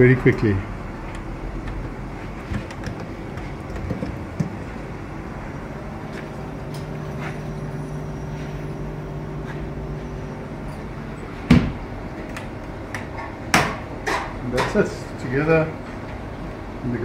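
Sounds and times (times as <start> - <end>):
fridge compressor and fan humming: 0.0 - 17.0.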